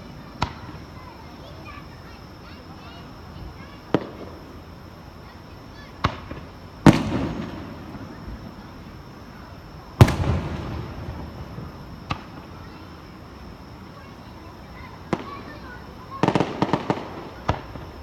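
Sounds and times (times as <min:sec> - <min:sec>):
firework shells booming: 0:06.0 - 0:09.1, 0:09.9 - 0:12.5, 0:16.1 - 0:18.0
rumbling echo: 0:10.0 - 0:12.0.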